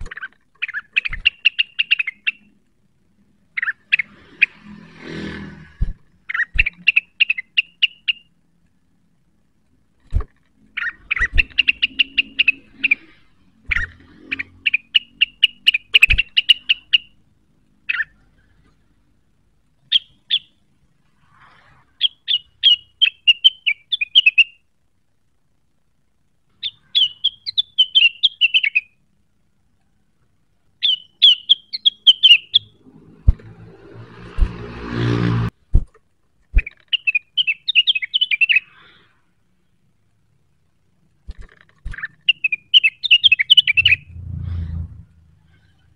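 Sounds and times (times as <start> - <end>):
songbird chattering trills: 0.0 - 2.6, 10.7 - 17.2, 26.6 - 29.0, 30.8 - 32.8, 42.0 - 44.1.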